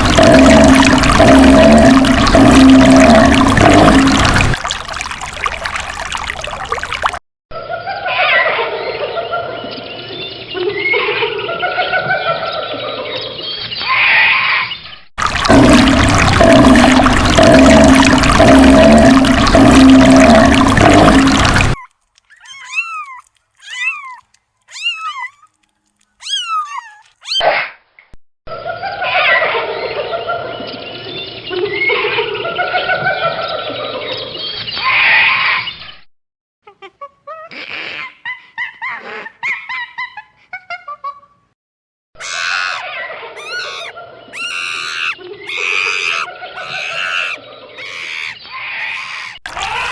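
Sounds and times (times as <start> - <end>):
rushing water-like noise: 0.0 - 7.2, 15.2 - 21.8
cat meowing: 22.4 - 25.4
many birds calling: 43.4 - 49.4.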